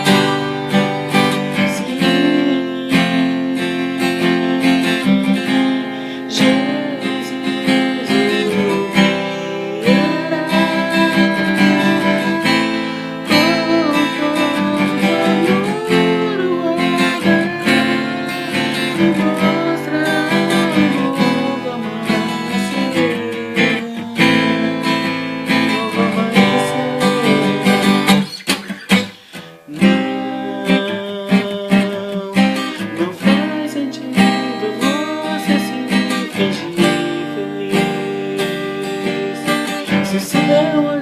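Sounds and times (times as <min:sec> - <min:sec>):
acoustic guitar strumming chords: 0:00.0 - 0:41.0
gliding melody line: 0:05.3 - 0:21.9.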